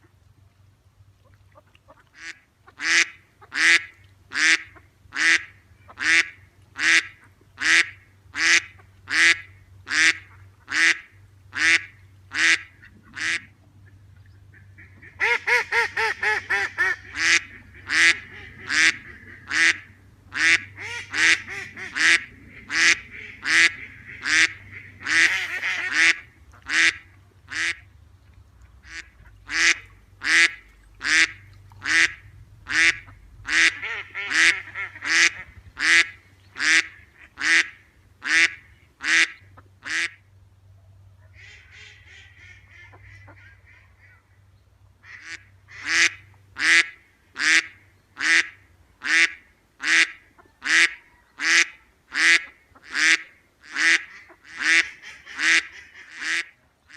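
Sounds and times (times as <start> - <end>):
soft duck chatter: 1.2 - 27.9, 40.8 - 56.9
duck quacking: 1.5 - 27.9, 28.8 - 40.2, 41.2 - 56.9.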